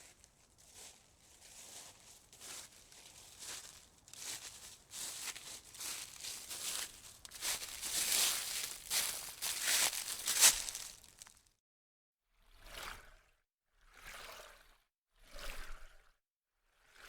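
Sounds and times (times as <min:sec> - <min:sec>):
footsteps crunching on loose ground: 0:00.0 - 0:11.4.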